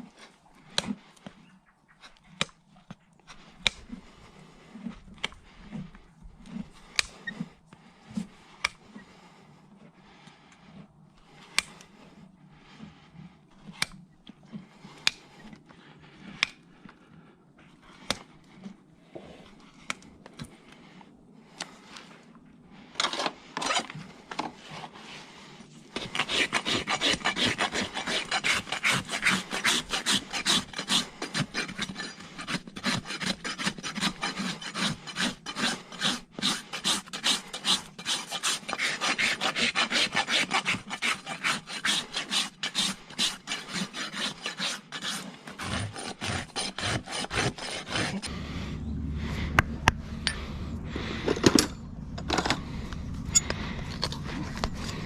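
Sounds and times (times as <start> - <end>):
rasp filing hoof: 0.0 - 9.3, 9.9 - 20.8, 23.0 - 51.6, 52.3 - 55.0
steady low hum: 47.8 - 55.0.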